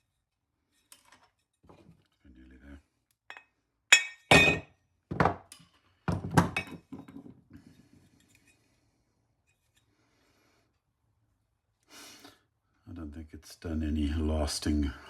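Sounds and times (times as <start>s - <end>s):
metal knocks and clinks: 3.3s - 5.6s.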